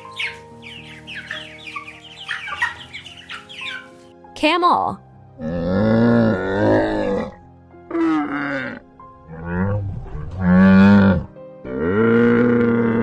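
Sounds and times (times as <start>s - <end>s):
camel calling: 5.4s - 13.0s.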